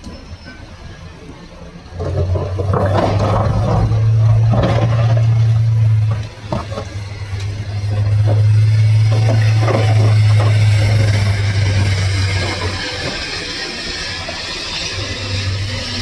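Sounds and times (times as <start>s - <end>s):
excavator engine drone: 0.0s - 16.0s
scraping and clattering: 1.9s - 16.0s.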